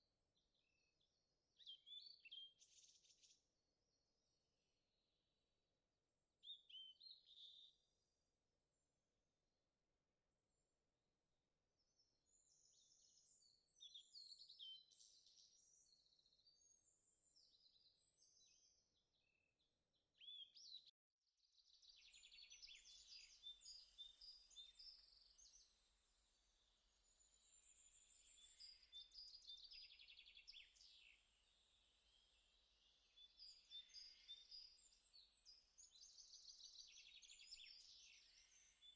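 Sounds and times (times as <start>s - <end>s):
faint birdsong chirps and trills: 0.0s - 38.9s.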